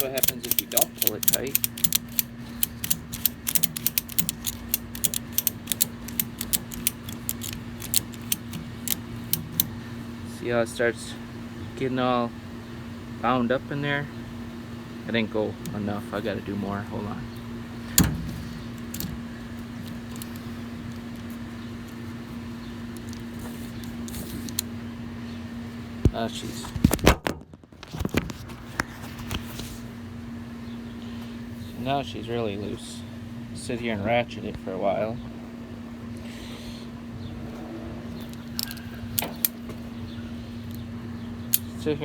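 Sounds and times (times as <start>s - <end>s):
ratchet strap pawl clicking: 0.0s - 9.8s, 19.8s - 21.3s
steady low hum: 0.0s - 27.0s, 28.5s - 42.0s.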